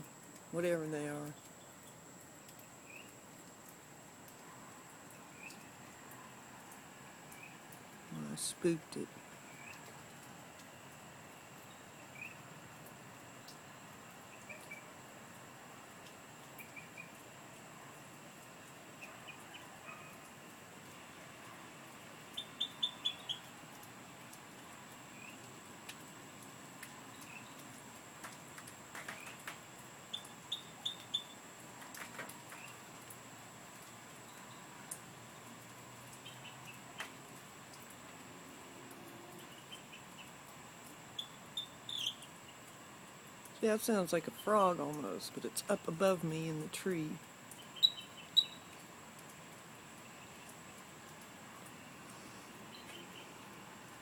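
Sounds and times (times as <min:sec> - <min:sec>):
faint high animal chirps: 0:22.4 - 0:23.5, 0:41.2 - 0:42.2, 0:47.8 - 0:48.7.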